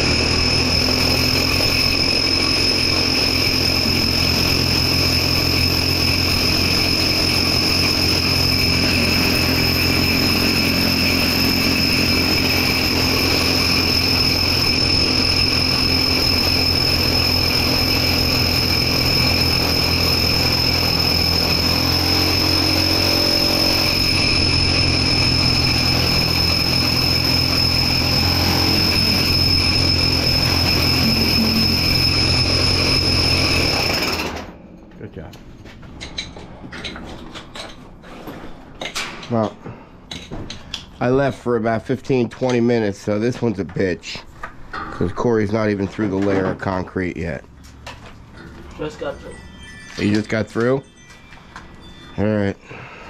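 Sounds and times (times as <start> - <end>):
electric drill boring concrete: 0.0 - 34.6.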